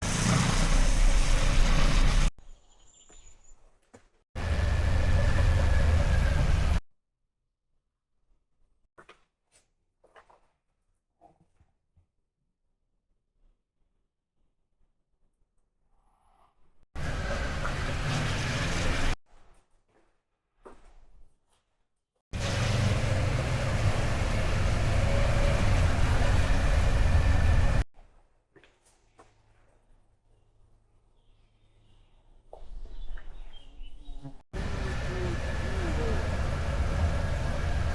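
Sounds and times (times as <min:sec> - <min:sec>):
motorcycle riding: 0:00.0 - 0:02.3, 0:04.4 - 0:06.8, 0:17.0 - 0:19.2, 0:22.4 - 0:27.8, 0:34.6 - 0:37.9.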